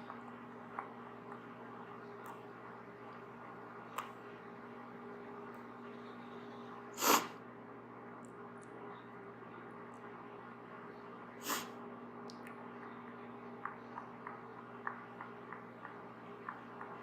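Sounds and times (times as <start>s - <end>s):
faint hum and hiss: 0.0s - 17.0s
nasal sniffle: 7.0s - 7.4s, 11.4s - 11.7s.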